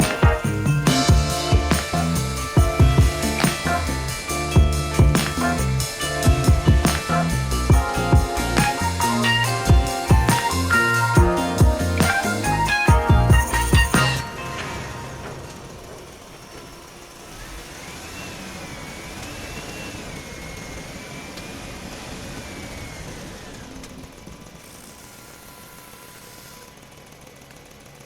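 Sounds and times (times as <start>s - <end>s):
rough mechanical noise: 0.0s - 27.6s
toy electric motor whine: 16.0s - 27.0s.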